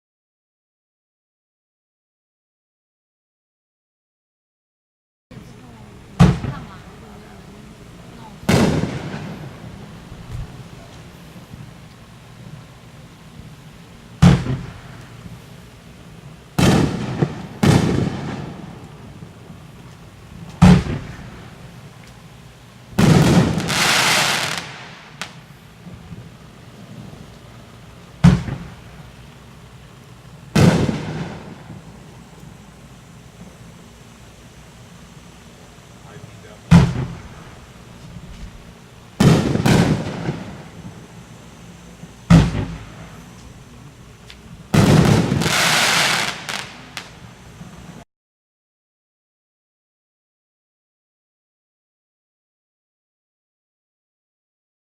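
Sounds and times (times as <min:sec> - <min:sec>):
firework crackling hiss: 0:05.3 - 0:48.0
firework shell bursts: 0:14.2 - 0:15.4, 0:22.9 - 0:26.1, 0:28.2 - 0:29.2, 0:30.2 - 0:32.5, 0:36.2 - 0:41.4, 0:42.2 - 0:43.6, 0:44.3 - 0:47.2
small firework pop: 0:20.5 - 0:21.2, 0:23.0 - 0:25.5, 0:28.2 - 0:28.7, 0:42.3 - 0:43.6, 0:44.2 - 0:47.2.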